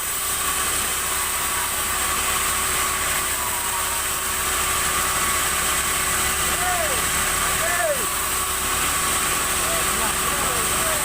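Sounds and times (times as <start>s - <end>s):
high mechanical whine: 0.0s - 11.0s
sawmill machinery drone: 0.0s - 11.0s.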